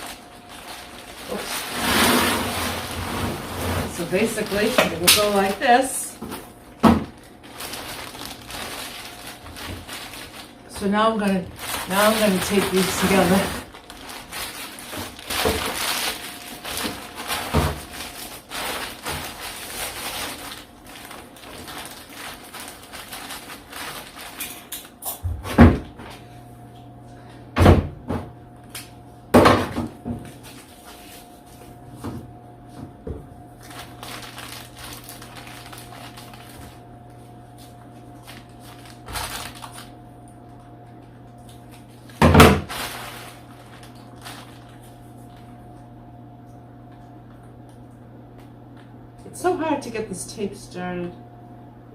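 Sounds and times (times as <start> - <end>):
crinkly rustling: 0.0 - 25.0, 30.3 - 31.7, 33.5 - 45.8
steady low hum: 0.0 - 51.9.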